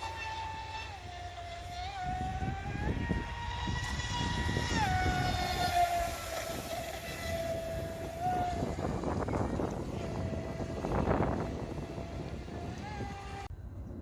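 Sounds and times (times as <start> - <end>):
electric motor whining: 0.0 - 13.5
rush of water and wind: 0.0 - 13.5.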